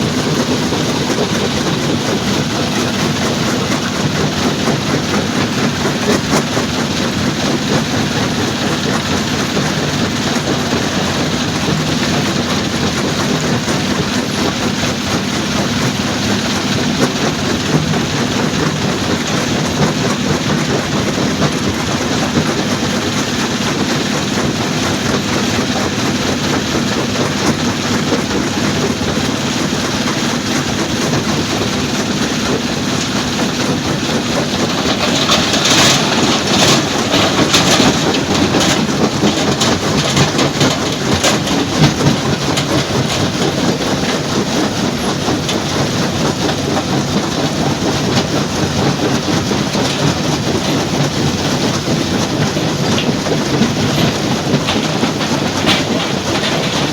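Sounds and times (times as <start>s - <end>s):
machinery rattling and knocking: 0.0s - 56.9s
stone crusher clattering: 31.3s - 46.2s, 48.1s - 56.9s.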